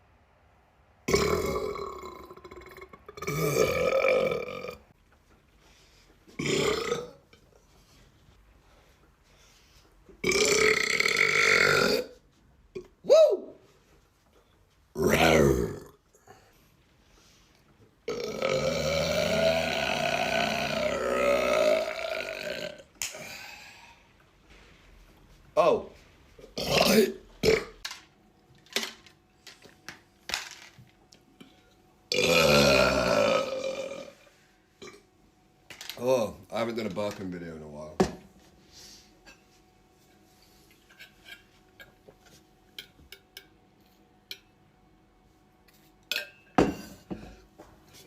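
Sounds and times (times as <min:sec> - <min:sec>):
man burping: 0:01.1 - 0:04.9, 0:06.4 - 0:07.3, 0:10.2 - 0:12.9, 0:15.0 - 0:16.0, 0:18.1 - 0:23.9, 0:26.5 - 0:27.8, 0:32.1 - 0:34.2, 0:34.8 - 0:35.1.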